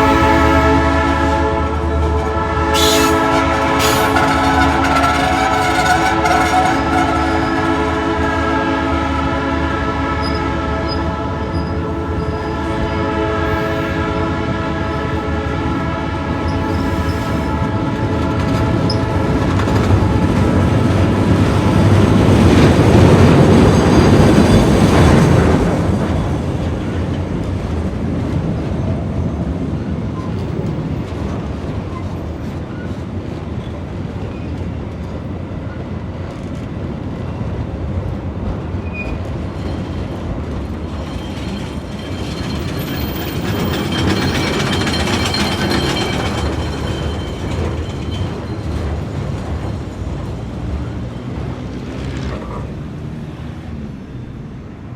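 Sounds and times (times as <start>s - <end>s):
train horn chord: 0.0s - 19.4s
locomotive engine: 0.0s - 26.8s, 39.3s - 54.9s
train cars rumbling on track: 0.0s - 54.9s.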